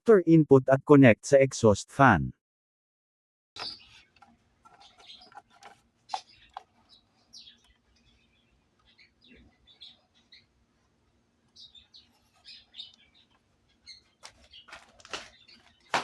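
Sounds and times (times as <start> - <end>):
small birds chirping: 3.6 - 10.7, 11.4 - 16.0.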